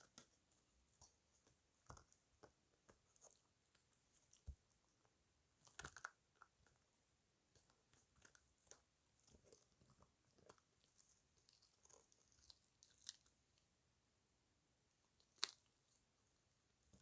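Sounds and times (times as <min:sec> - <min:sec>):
puppy chewing and crunching bone: 0:01.0 - 0:03.5, 0:04.1 - 0:06.8, 0:07.5 - 0:13.3.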